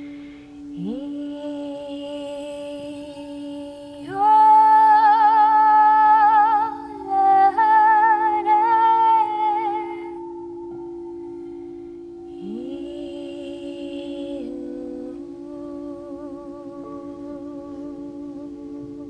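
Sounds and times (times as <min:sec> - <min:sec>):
singing bowl ringing: 0:00.0 - 0:19.0.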